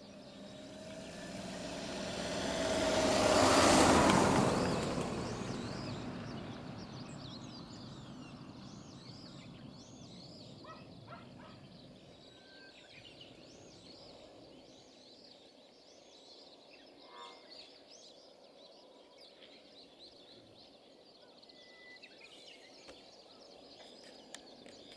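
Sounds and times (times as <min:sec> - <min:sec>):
vehicle passing: 0:00.0 - 0:12.0
birds chirping: 0:00.0 - 0:13.8.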